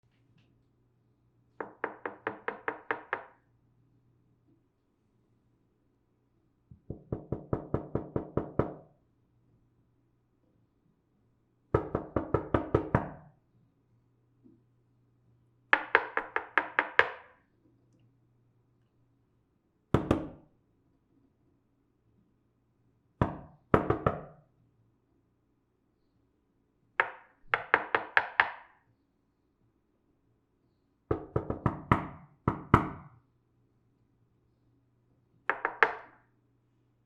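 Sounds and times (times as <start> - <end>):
knocking on a door: 1.6 - 3.4, 6.7 - 8.8, 11.8 - 13.2, 19.9 - 20.4, 23.2 - 24.3, 27.0 - 28.7, 31.1 - 33.1, 35.5 - 36.2.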